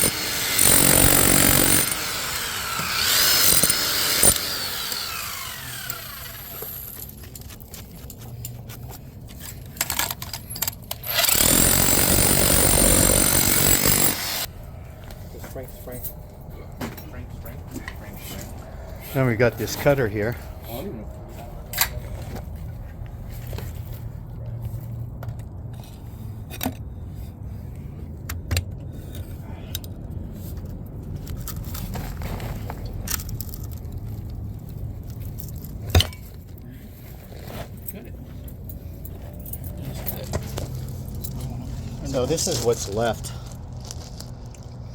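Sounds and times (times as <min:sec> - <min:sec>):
power tool whine: 0:00.0 - 0:07.1, 0:11.0 - 0:14.5.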